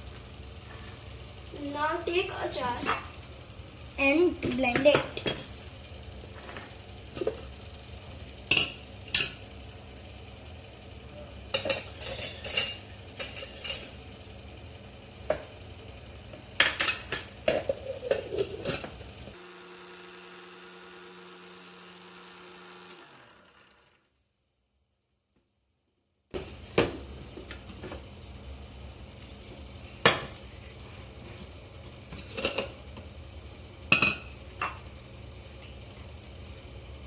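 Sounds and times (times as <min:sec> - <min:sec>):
mixer grinder motor hum: 0:16.9 - 0:24.1.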